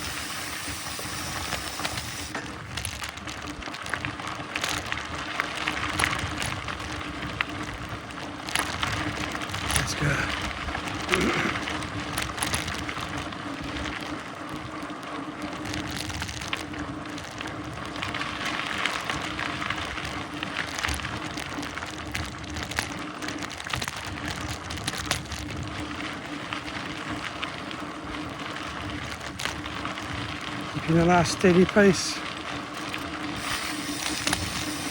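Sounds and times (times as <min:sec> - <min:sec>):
faint steady hum: 0:00.0 - 0:02.4
wind noise: 0:00.0 - 0:03.6, 0:33.0 - 0:34.9
bike tires rolling on dirt: 0:00.0 - 0:34.9
small clicks and rattles: 0:10.7 - 0:34.9.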